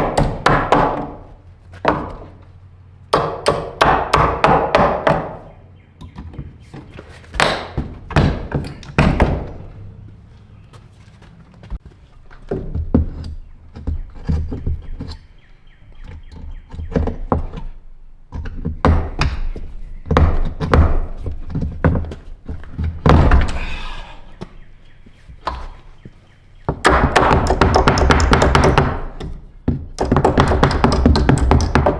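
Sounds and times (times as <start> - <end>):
hammer knocking on wood: 0.0 - 1.2, 3.1 - 6.6, 7.3 - 9.9, 18.3 - 23.8, 26.7 - 31.9.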